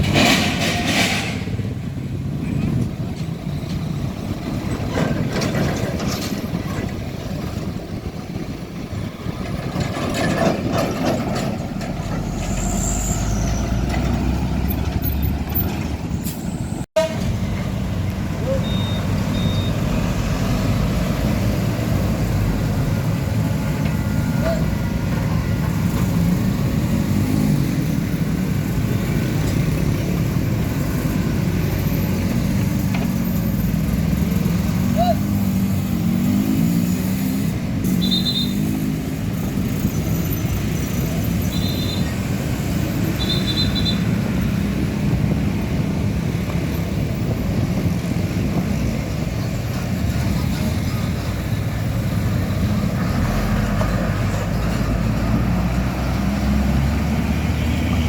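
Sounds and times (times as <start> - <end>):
diesel trucks rumbling: 0.0 - 58.0
traffic noise: 0.0 - 58.0
short high beeps: 18.5 - 19.8.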